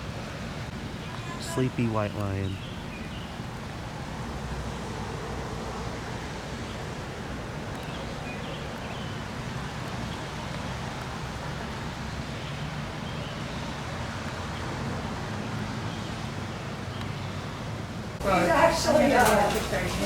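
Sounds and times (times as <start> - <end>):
low rumble and hiss: 0.0 - 13.2.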